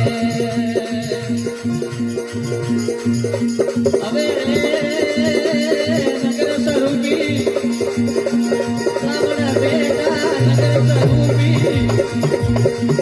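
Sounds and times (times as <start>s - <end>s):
drum strokes: 0.0s - 13.0s
jingling rattle percussion: 0.0s - 13.0s.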